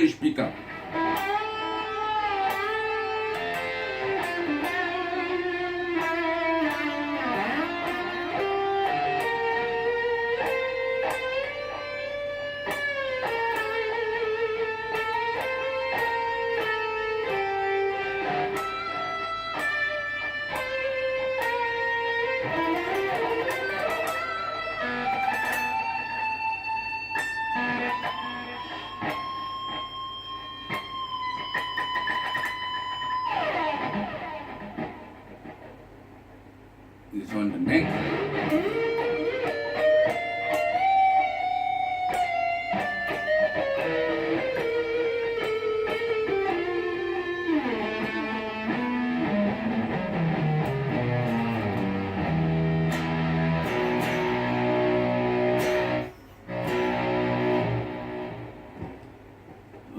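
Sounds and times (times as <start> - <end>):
distorted electric guitar lead: 0.0 - 59.9.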